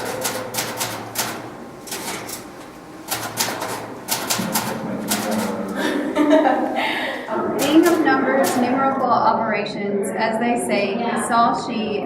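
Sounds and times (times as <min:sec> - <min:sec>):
typewriter keys clacking: 0:00.0 - 0:05.8, 0:07.6 - 0:09.0.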